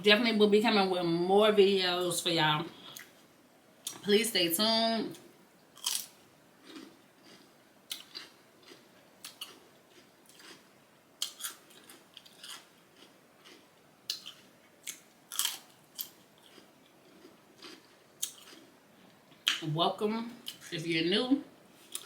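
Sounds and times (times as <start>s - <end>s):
person chewing food: 5.8s - 19.6s, 21.8s - 22.0s.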